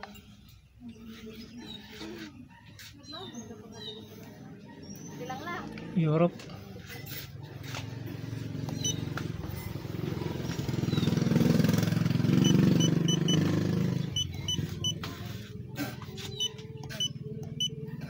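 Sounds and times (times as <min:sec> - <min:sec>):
low engine rumble: 0:05.6 - 0:18.0
short high beeps: 0:12.4 - 0:13.4.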